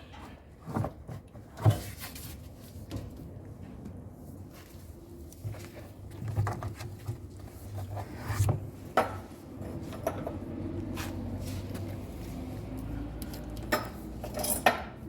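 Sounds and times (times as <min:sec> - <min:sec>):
tools knocking and clinking: 0:13.3 - 0:15.0.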